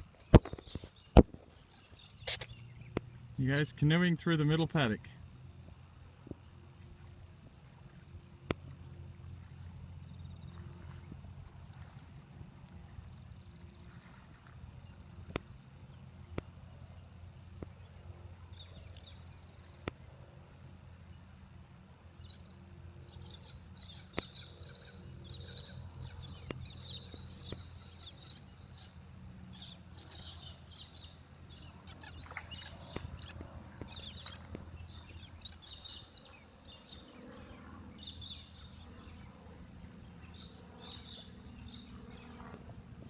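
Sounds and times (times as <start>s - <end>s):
birds chirping: 0.2s - 5.3s, 22.1s - 42.8s.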